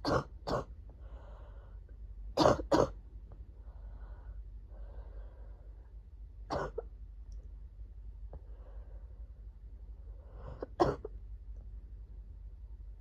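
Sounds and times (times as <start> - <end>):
person coughing: 0.0 - 0.7, 2.4 - 3.0, 6.5 - 6.8, 10.6 - 11.1
quiet breathing: 0.8 - 2.1, 3.3 - 6.2, 8.2 - 10.8.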